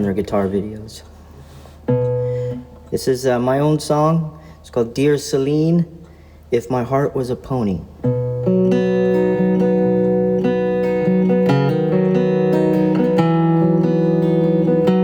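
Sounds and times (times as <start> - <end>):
fingerpicked acoustic guitar: 1.4 - 3.7, 8.0 - 15.0.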